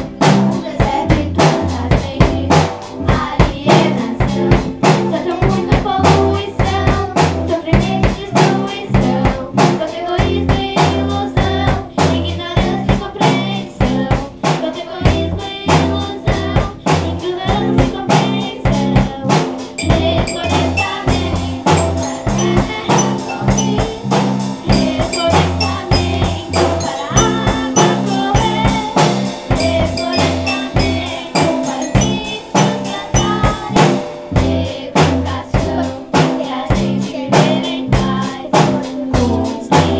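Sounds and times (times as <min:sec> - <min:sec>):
drum kit beat: 0:16.4 - 0:39.9
band playing instrumental: 0:19.6 - 0:35.3.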